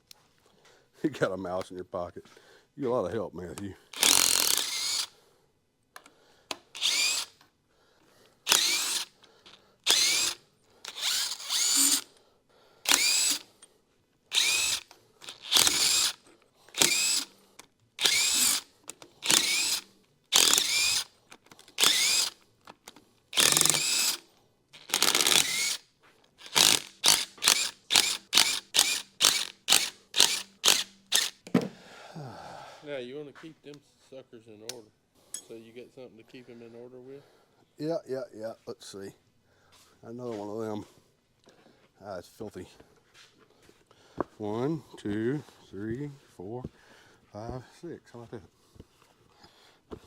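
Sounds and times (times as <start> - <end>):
power drill motor bursts: 4.0 - 5.1, 6.7 - 7.4, 8.5 - 9.2, 9.8 - 12.1, 12.9 - 13.5, 14.3 - 17.4, 18.0 - 21.1, 21.7 - 22.4, 23.3 - 24.2, 24.8 - 31.4.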